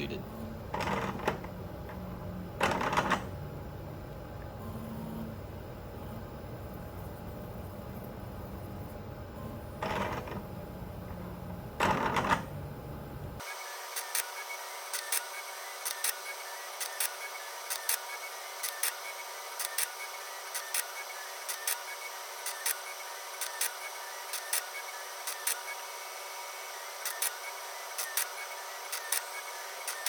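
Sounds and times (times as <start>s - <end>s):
sharp mechanical clicks: 16.8s - 18.0s, 18.6s - 19.0s, 19.6s - 20.9s, 21.5s - 21.8s, 23.4s - 24.7s, 25.3s - 25.6s, 27.0s - 27.4s, 28.0s - 30.0s.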